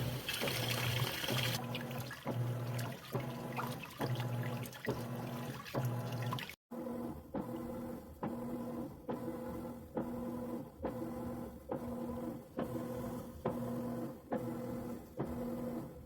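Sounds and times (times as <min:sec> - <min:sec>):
washing machine motor humming: 0:00.0 - 0:08.6.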